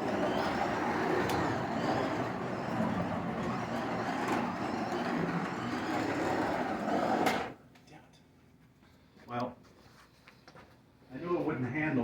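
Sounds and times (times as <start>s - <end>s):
gear and tyre noise: 0.0s - 7.6s
slot car motor whining: 0.0s - 7.6s.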